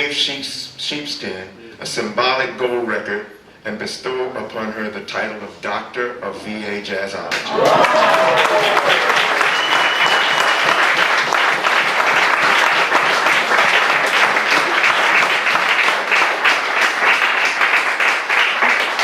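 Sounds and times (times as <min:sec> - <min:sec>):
audience applauding: 0:07.4 - 0:19.0.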